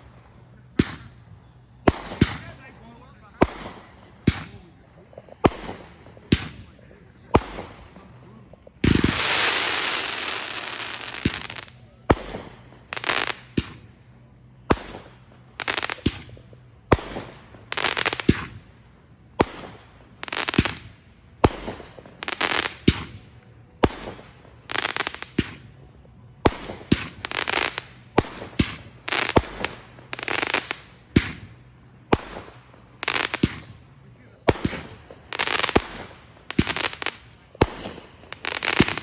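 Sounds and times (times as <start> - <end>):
fireworks crackling hiss: 0.0 - 39.0
fireworks banging: 1.8 - 13.9, 26.4 - 33.8, 34.4 - 39.0.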